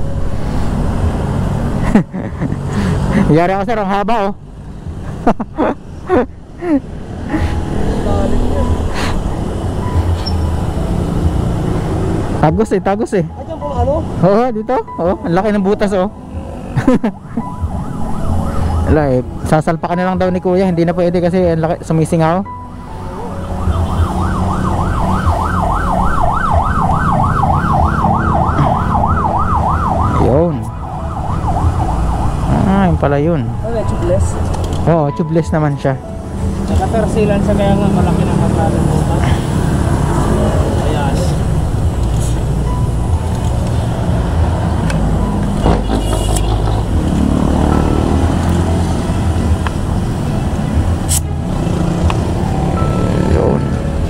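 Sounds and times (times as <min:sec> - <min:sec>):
low traffic rumble: 0:00.0 - 0:54.0
siren yelping: 0:16.4 - 0:19.8, 0:23.0 - 0:34.4.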